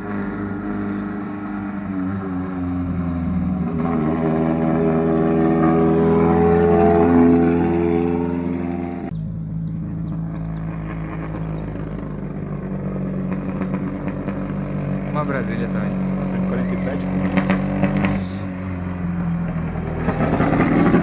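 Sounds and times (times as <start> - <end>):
car engine running loud: 0.0 - 21.0
engine running at lower pitch: 0.0 - 21.0.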